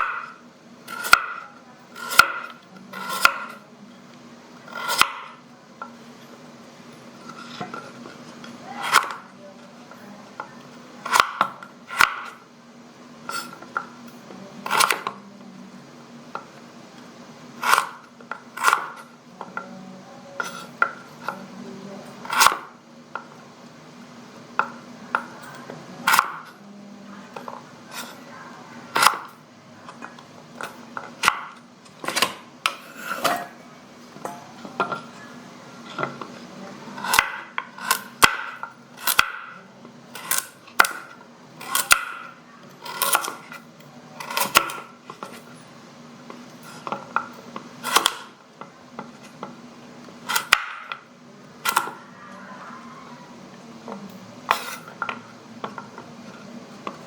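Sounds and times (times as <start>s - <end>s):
knife chopping carrot on board: 11.0s - 12.3s, 29.0s - 29.3s.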